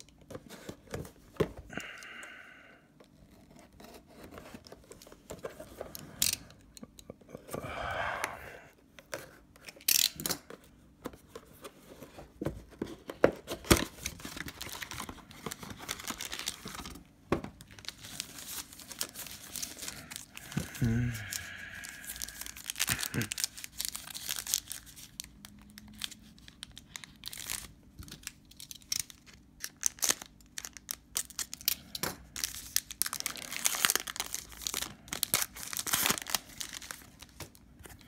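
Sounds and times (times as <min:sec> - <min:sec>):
plastic wrap tearing and crinkling: 0:13.7 - 0:17.0, 0:17.6 - 0:37.5.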